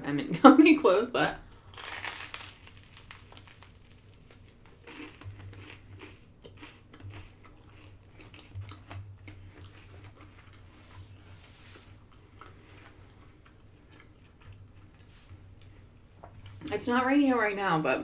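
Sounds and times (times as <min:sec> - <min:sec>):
person chewing food: 0:01.5 - 0:11.3, 0:11.9 - 0:16.6.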